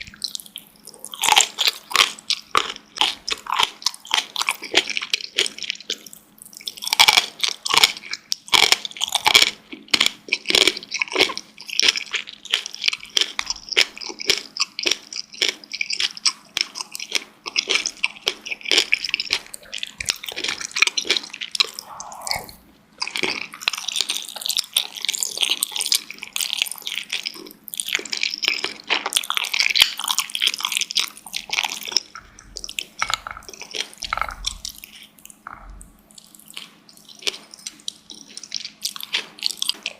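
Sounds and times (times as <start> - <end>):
wet chewing and smacking: 0.0 - 39.9.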